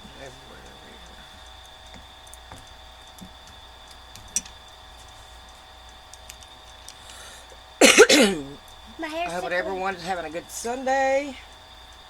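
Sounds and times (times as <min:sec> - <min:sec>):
electrical hum: 0:00.0 - 0:12.0
small objects clicking and tapping: 0:01.0 - 0:07.2.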